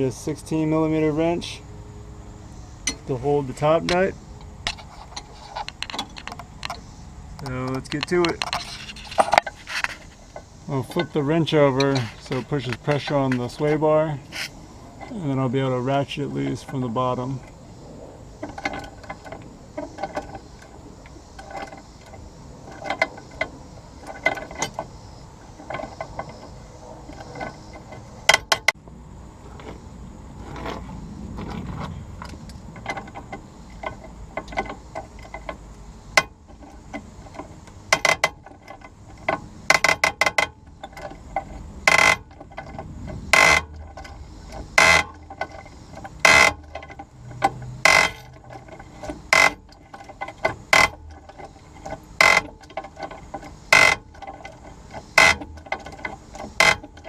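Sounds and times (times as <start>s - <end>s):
hand ratchet clicking: 32.8s - 57.0s.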